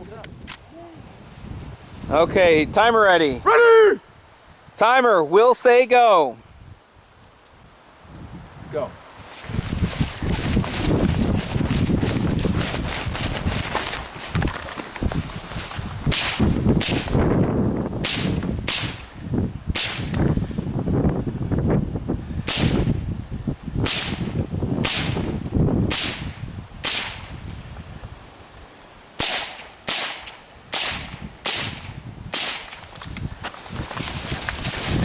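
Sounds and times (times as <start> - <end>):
rifle shots: 29.2 - 32.7.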